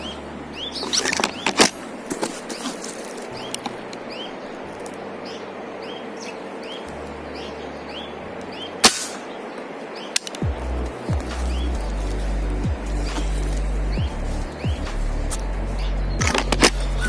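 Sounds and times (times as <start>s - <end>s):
small bird chirping: 0.0s - 1.6s, 2.4s - 17.0s
air rifle shot: 8.8s - 9.3s.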